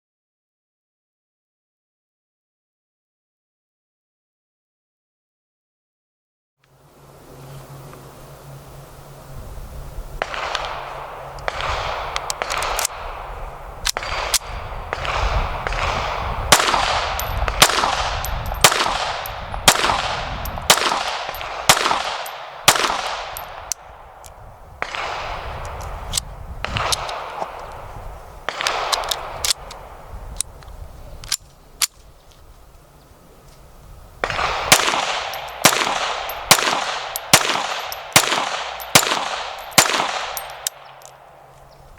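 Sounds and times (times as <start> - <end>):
pistol gunshots echoing: 10.2 - 13.4, 14.0 - 24.2, 24.8 - 25.5, 28.5 - 29.7, 34.2 - 41.5.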